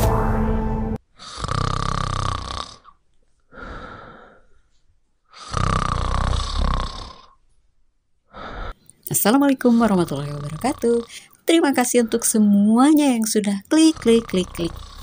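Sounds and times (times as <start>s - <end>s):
person snoring: 1.1s - 4.6s, 5.3s - 7.4s, 8.3s - 8.8s, 13.8s - 15.0s.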